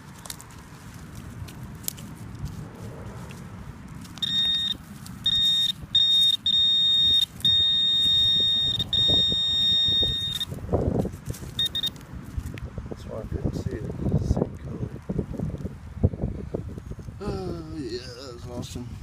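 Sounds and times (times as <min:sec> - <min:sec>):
leaves and soil rustling: 0:00.0 - 0:19.0
metal detector beeping: 0:04.2 - 0:10.6, 0:11.5 - 0:12.0.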